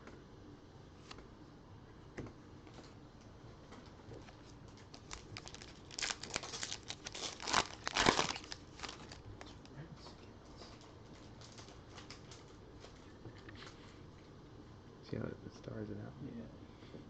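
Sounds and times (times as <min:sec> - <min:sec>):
plastic wrapper crinkling and tearing: 0:04.4 - 0:09.7.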